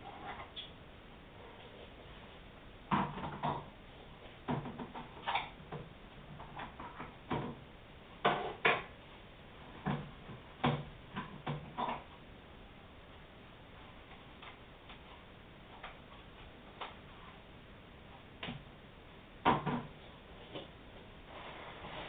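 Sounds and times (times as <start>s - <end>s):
hard objects knocking and clicking: 4.5s - 7.6s.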